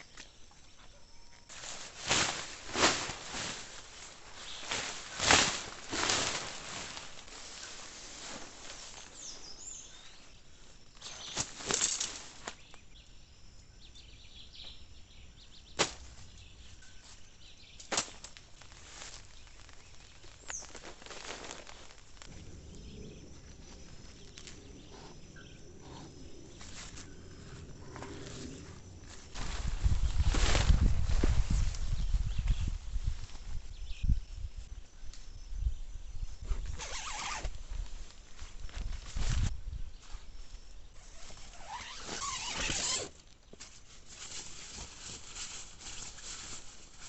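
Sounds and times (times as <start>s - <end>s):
faint outdoor background: 0.0s - 47.0s
rustling: 1.4s - 10.3s, 15.8s - 33.7s, 36.5s - 47.0s.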